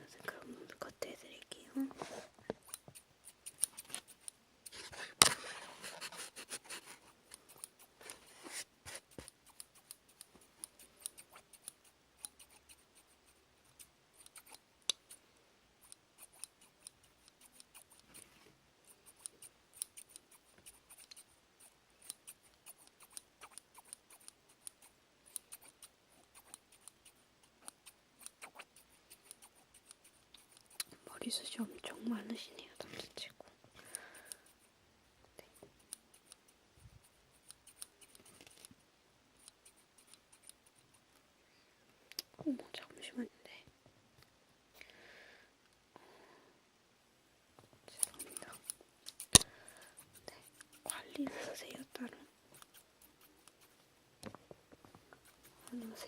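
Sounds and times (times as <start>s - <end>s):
scissors snipping: 2.6s - 5.4s, 13.7s - 15.2s, 15.8s - 18.3s, 19.0s - 21.3s, 22.0s - 30.9s, 37.3s - 38.7s, 48.0s - 51.2s, 52.5s - 53.6s.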